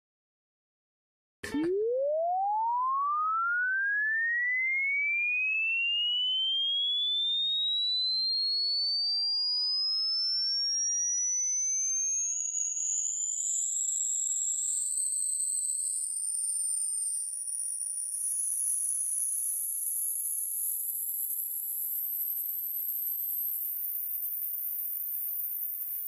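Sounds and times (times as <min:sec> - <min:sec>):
second lower tone: 0:01.4 - 0:03.3
sine tone sweeping upward: 0:01.5 - 0:15.8.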